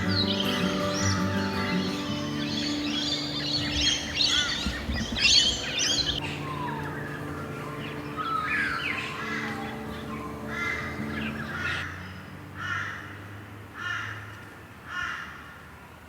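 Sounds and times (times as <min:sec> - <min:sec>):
birds chirping: 0:00.0 - 0:12.8.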